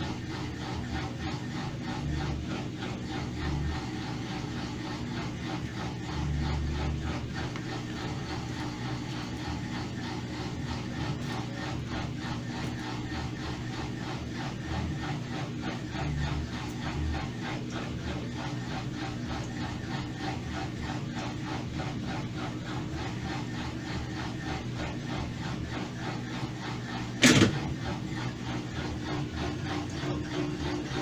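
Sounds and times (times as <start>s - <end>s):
washing machine spin cycle: 0.0s - 31.0s.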